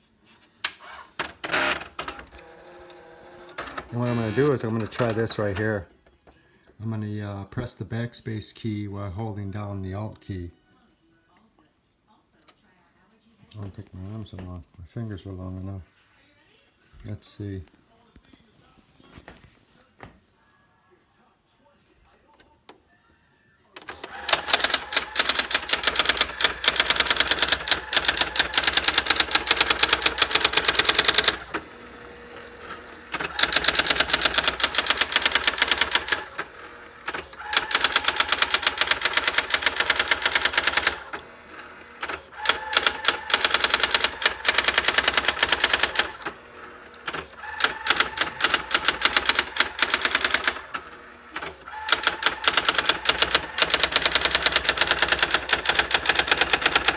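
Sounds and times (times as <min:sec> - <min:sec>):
typewriter fast even clicking: 0:23.8 - 0:31.6, 0:33.2 - 0:36.5, 0:37.1 - 0:41.1, 0:42.0 - 0:46.3, 0:47.1 - 0:50.7, 0:51.8 - 0:56.9.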